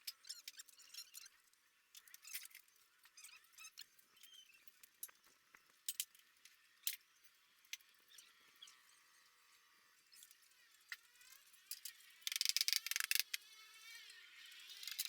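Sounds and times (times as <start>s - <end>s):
metallic clicks of hand tools: 11.7s - 13.4s.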